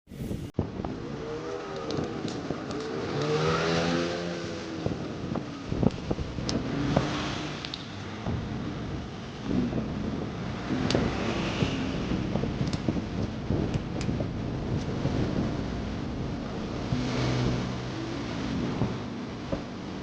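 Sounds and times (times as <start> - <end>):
sharp clicks: 7.6 - 7.9.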